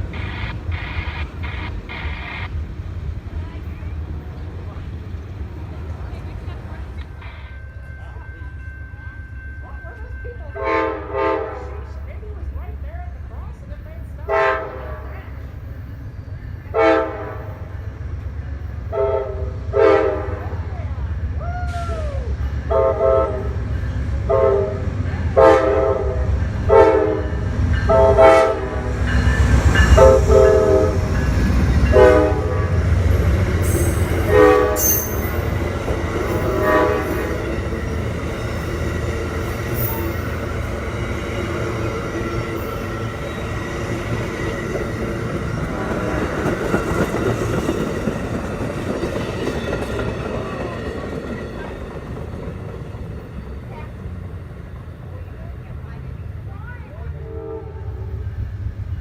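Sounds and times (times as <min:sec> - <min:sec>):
passing train rumble: 0:00.0 - 0:59.0
rail noise: 0:00.0 - 0:59.0
train horn short blasts: 0:10.6 - 0:12.0, 0:14.3 - 0:15.2, 0:16.7 - 0:17.6, 0:18.9 - 0:20.5, 0:22.7 - 0:23.6, 0:24.3 - 0:29.0, 0:29.9 - 0:31.1, 0:31.9 - 0:32.8, 0:33.7 - 0:35.4, 0:36.4 - 0:37.4, 0:57.2 - 0:58.2.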